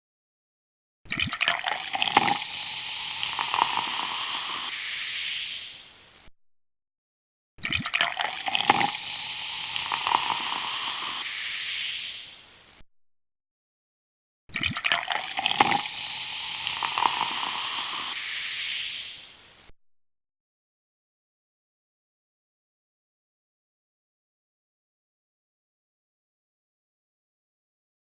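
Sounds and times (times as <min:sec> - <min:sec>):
soft drink fizzing: 0:01.1 - 0:06.3, 0:07.6 - 0:12.8, 0:14.5 - 0:19.7.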